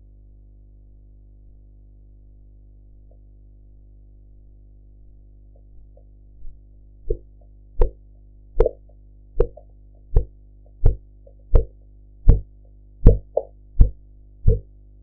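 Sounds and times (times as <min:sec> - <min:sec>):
steady low hum: 0:00.0 - 0:15.0
heartbeat thumps through stethoscope: 0:08.6 - 0:08.8, 0:09.4 - 0:14.7.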